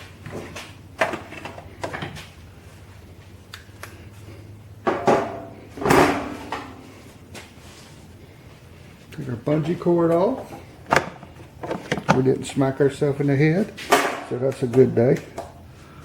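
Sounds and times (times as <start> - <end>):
steady low hum: 0.0 - 16.0
parts and tools clattering: 9.6 - 12.4.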